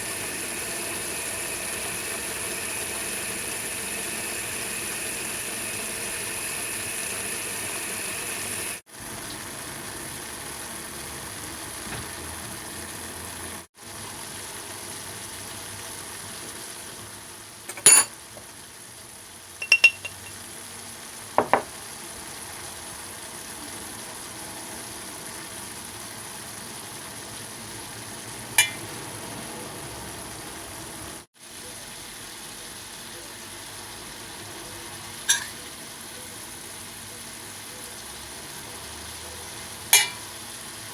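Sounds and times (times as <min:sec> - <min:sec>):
food sizzling in oil: 0:00.0 - 0:40.9
metal utensil clinking on pan: 0:17.7 - 0:18.1, 0:19.6 - 0:20.4, 0:28.6 - 0:28.9, 0:35.3 - 0:35.6, 0:39.9 - 0:40.3.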